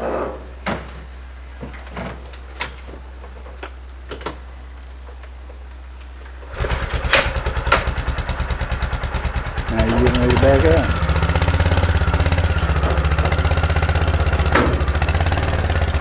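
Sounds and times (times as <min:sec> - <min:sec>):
four-wheeler engine idling: 0:03.8 - 0:16.0
metal ramp knocks and clanks: 0:06.6 - 0:08.1, 0:10.3 - 0:16.0.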